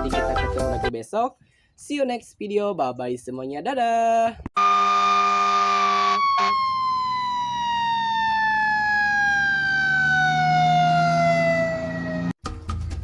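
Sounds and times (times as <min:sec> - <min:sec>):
siren winding down: 0:04.6 - 0:12.4.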